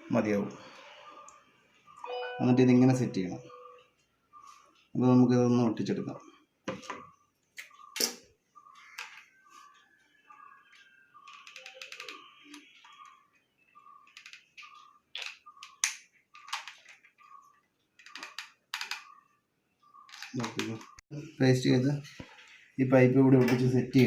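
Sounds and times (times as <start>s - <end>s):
plastic parts clicking and tapping: 14.0s - 17.2s, 18.0s - 19.2s, 20.1s - 21.0s.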